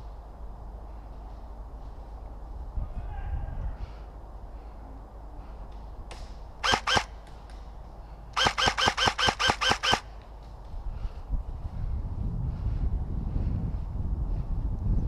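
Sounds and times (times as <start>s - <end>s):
airsoft rifle shots: 6.6s - 7.3s, 8.4s - 10.1s.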